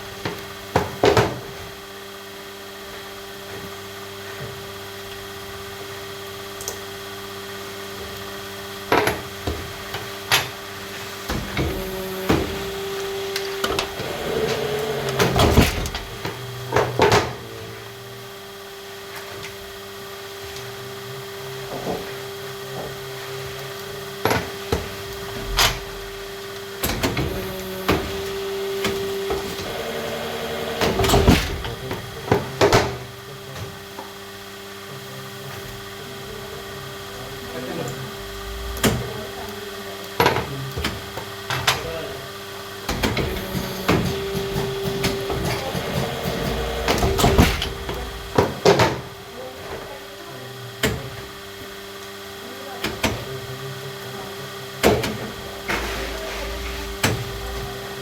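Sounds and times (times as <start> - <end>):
factory machinery humming: 8.4 - 18.9, 22.7 - 51.6, 54.5 - 58.0.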